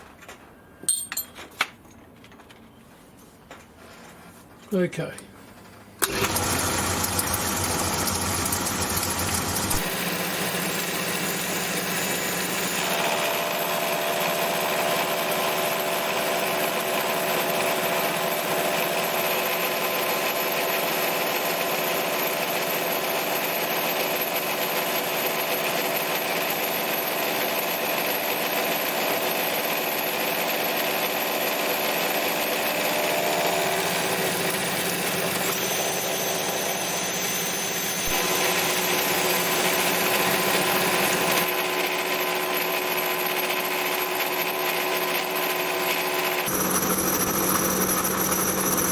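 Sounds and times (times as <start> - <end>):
milling machine cutting metal: 6.0 - 19.4, 29.8 - 48.9.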